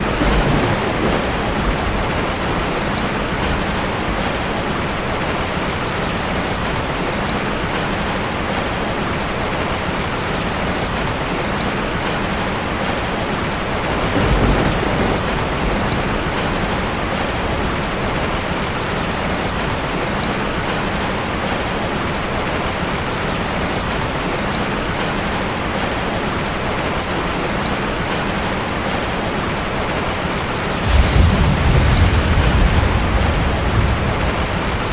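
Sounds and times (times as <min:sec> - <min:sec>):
rain falling on leaves: 0:00.0 - 0:34.9
low rumble: 0:30.8 - 0:34.9.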